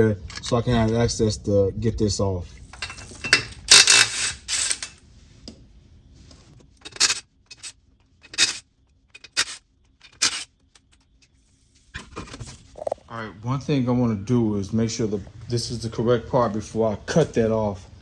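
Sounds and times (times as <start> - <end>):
hard objects scraping and clinking: 2.7 - 5.0, 6.8 - 8.6, 9.2 - 10.9.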